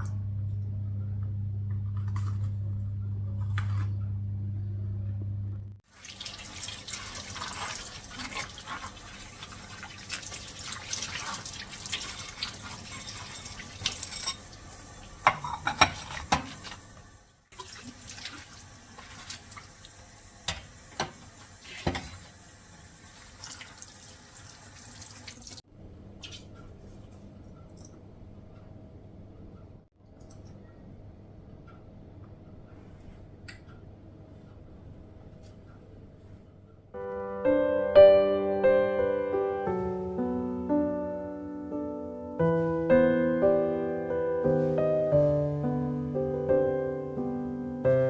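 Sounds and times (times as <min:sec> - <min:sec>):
water running: 0:05.8 - 0:26.6.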